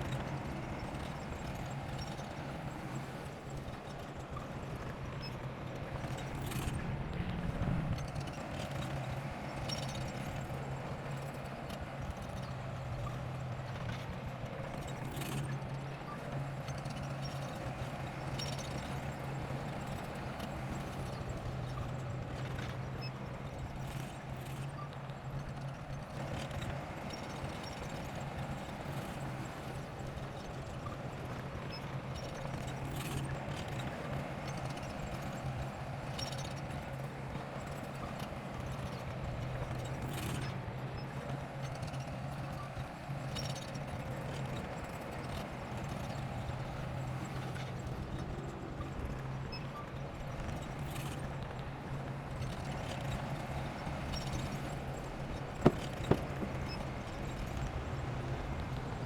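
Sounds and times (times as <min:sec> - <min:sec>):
diesel engine running: 0:55.5 - 0:56.8
short metallic clanks: 0:55.6 - 0:56.8.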